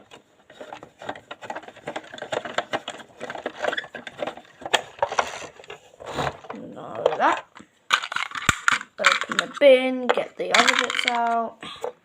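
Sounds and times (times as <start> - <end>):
plastic toy parts clicking: 7.0 - 11.9.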